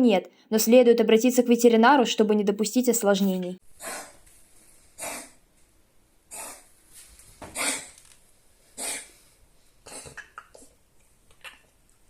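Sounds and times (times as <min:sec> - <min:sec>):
dog coughing: 0:05.0 - 0:05.3, 0:07.6 - 0:07.9, 0:08.8 - 0:09.1, 0:09.9 - 0:10.6.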